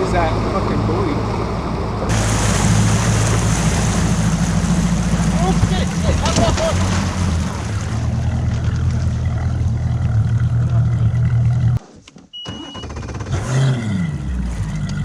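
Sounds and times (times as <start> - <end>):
outboard motor running: 0.0 - 11.8
short high beep: 12.4 - 13.0.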